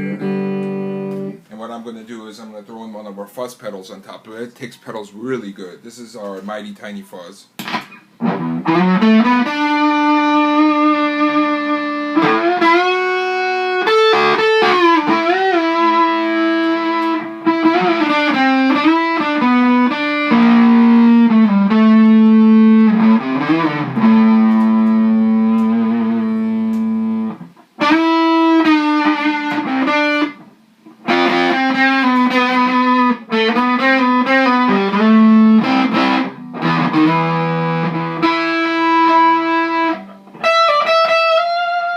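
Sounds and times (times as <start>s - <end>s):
fuzzy electric guitar lead: 0.0s - 1.4s, 7.6s - 41.9s.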